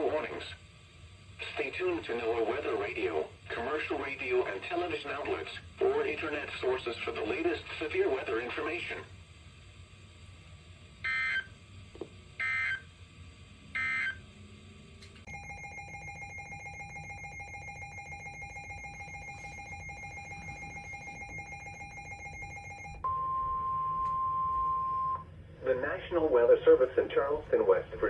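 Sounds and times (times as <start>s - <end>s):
single-pitch warning alarm tone: 11.0s - 11.5s, 12.4s - 12.8s, 13.8s - 14.2s, 15.3s - 25.2s
warbling data bursts: 15.3s - 23.0s.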